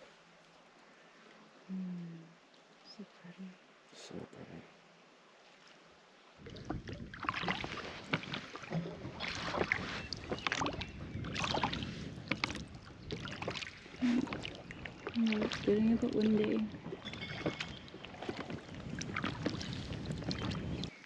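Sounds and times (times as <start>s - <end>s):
water splashing around boat: 2.3s - 21.0s
wind on microphone: 6.4s - 21.0s.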